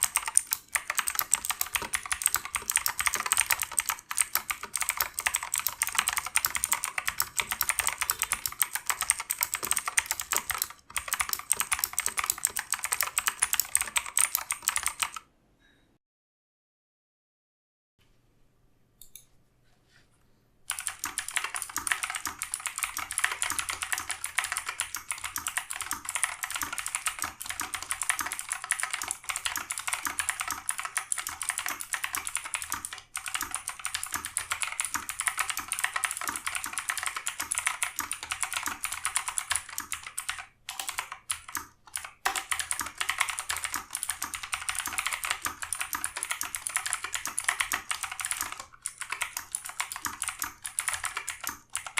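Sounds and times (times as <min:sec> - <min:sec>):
fast keyboard typing clicks: 0:00.0 - 0:15.2, 0:20.7 - 0:51.9.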